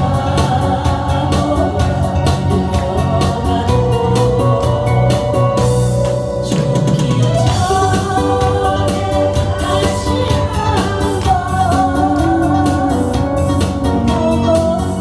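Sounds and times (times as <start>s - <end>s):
instrumental accompaniment with beat: 0.0s - 15.0s.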